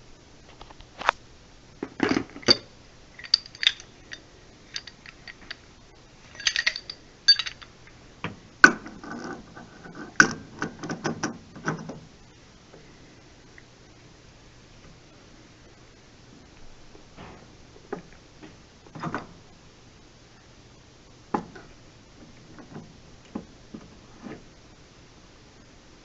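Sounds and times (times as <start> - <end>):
pipe wrench clicking and clanking: 2.1 - 5.6, 6.4 - 7.7.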